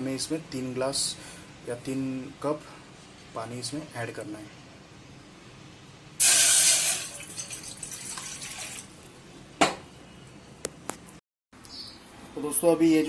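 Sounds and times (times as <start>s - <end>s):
water pouring into a pot: 6.2s - 9.0s.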